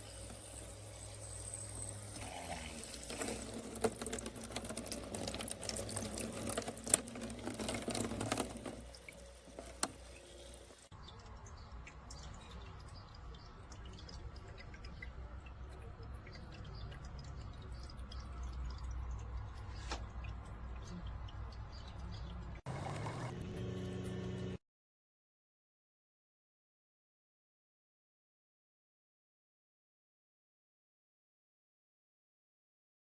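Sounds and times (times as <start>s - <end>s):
water splashing and pouring: 0.1s - 24.3s.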